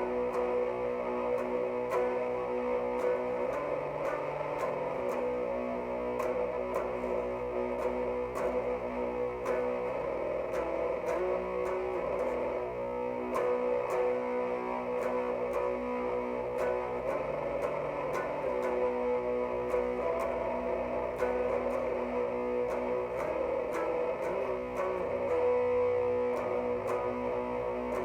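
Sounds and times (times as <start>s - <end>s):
overdriven electric guitar riff: 0.0s - 28.0s.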